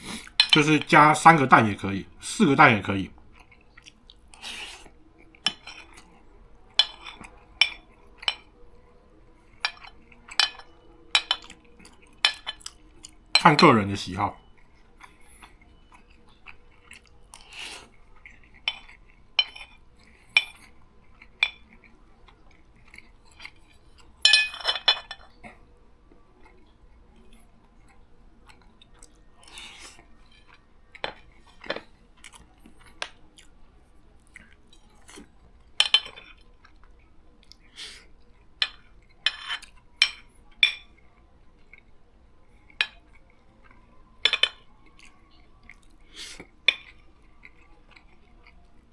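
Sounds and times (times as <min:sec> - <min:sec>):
person chewing: 0:00.0 - 0:00.6, 0:03.2 - 0:08.5, 0:11.2 - 0:13.4, 0:14.4 - 0:24.2, 0:26.4 - 0:33.6, 0:34.2 - 0:35.3, 0:36.0 - 0:39.8, 0:44.9 - 0:48.8
cutlery clinking on a plate: 0:00.4 - 0:00.8, 0:05.4 - 0:06.1, 0:06.7 - 0:08.5, 0:09.6 - 0:12.8, 0:18.5 - 0:20.7, 0:22.9 - 0:25.5, 0:29.4 - 0:31.9, 0:34.7 - 0:36.4, 0:38.6 - 0:41.0, 0:42.7 - 0:43.2, 0:44.2 - 0:44.7, 0:46.7 - 0:47.0.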